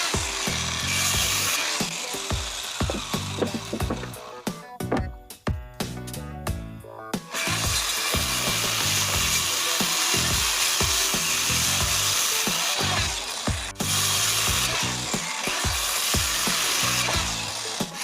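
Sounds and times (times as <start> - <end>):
power tool working wood: 0.0 - 4.5, 7.3 - 18.0
background music with beat: 1.8 - 8.8.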